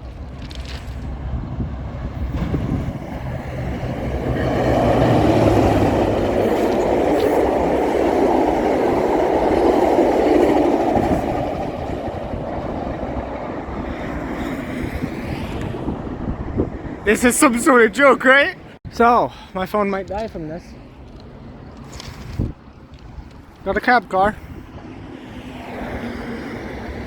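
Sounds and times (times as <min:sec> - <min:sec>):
train wheels rattling: 0:00.0 - 0:13.3
train engine hum: 0:00.0 - 0:27.0.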